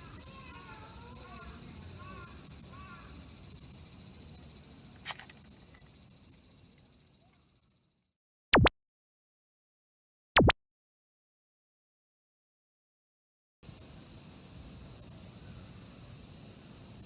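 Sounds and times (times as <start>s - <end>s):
insects chirring: 0.0s - 8.1s, 13.6s - 17.0s
short loud clicks: 5.0s - 5.9s.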